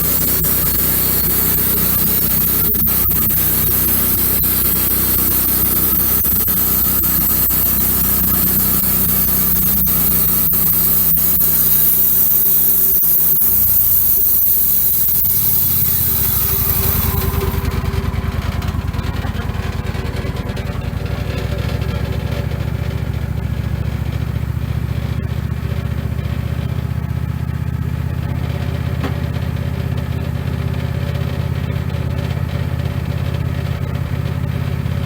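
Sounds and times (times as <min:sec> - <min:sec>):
saw blade hissing through wood: 0:00.0 - 0:22.8
sawmill engine running: 0:00.0 - 0:35.0.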